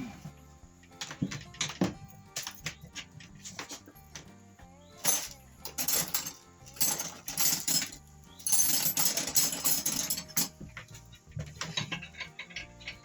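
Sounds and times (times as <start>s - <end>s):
background music: 0.0s - 13.0s
metal scraping and clanking: 5.0s - 13.0s.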